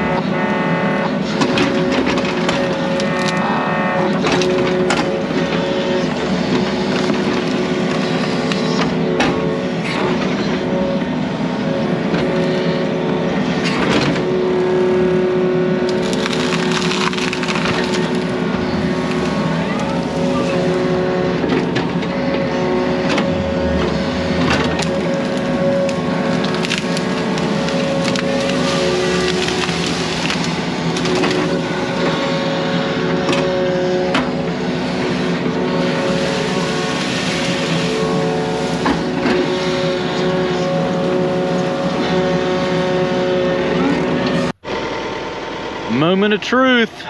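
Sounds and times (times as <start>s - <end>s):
diesel engine running: 0.0s - 47.0s
knocks and scrapes of digging: 15.9s - 42.3s.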